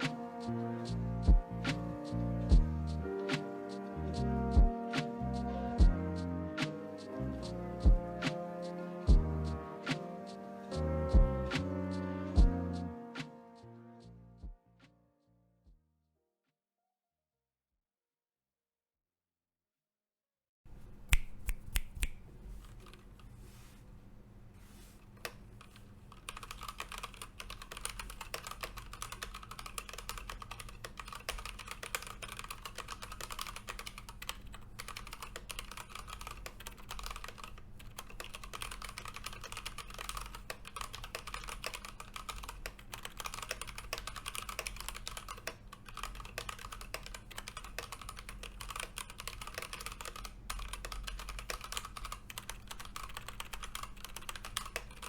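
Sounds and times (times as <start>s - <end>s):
mechanical keyboard typing: 25.2s - 55.0s.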